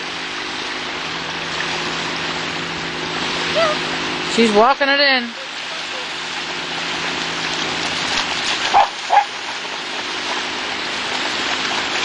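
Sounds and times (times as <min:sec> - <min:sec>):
surf: 0:00.0 - 0:12.0
dog barking: 0:08.7 - 0:09.4.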